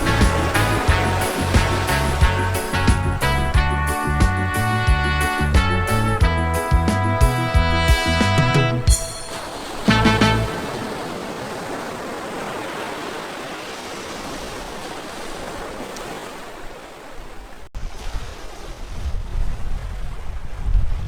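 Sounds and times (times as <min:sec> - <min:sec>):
surf washing onto beach: 0:00.0 - 0:05.9, 0:07.4 - 0:21.0
wind buffeting microphone: 0:00.0 - 0:12.4, 0:17.2 - 0:21.0.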